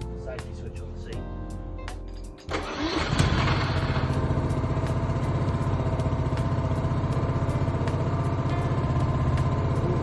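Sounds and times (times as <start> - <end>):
lawnmower engine running: 2.5 - 10.0.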